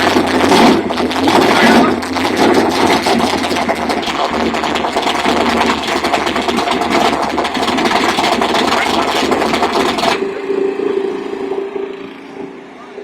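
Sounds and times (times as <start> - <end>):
car engine idling: 0.0 - 13.0.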